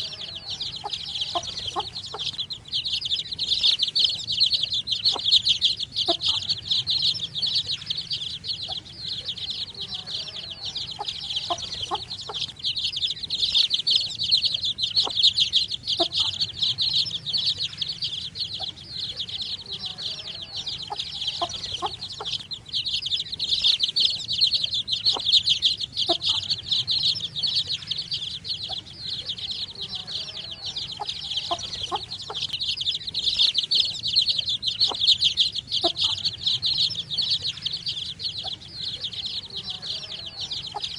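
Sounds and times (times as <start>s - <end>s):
baby chicks chirping: 0.0s - 40.9s.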